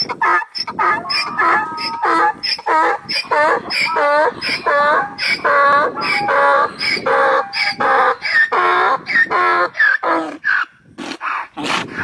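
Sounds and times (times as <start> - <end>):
child imitating chicken clucks: 0.1 - 6.5.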